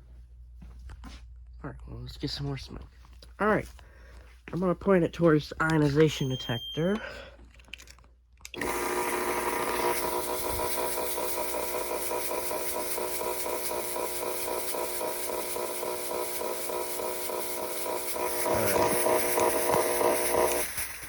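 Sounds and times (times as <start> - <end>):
fog machine buzzing and hissing: 8.6 - 21.0.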